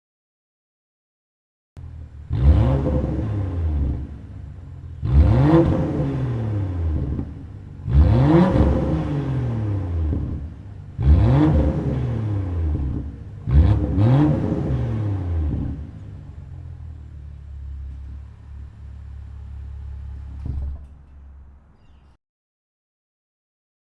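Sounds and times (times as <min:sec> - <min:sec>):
car engine revving: 0:01.8 - 0:20.8.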